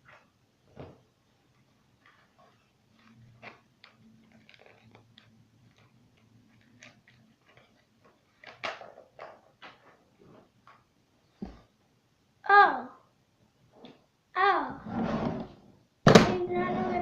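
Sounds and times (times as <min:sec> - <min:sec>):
packaging rustling: 0:01.9 - 0:10.0.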